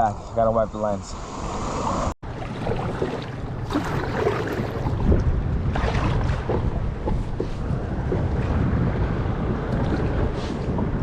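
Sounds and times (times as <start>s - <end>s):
wind buffeting microphone: 1.4s - 11.0s
water lapping and splashing: 1.8s - 11.0s.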